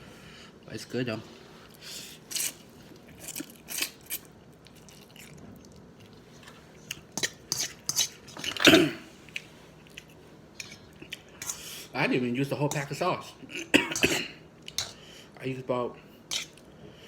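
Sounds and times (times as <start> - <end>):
wet chewing with smacking: 9.2 - 11.4.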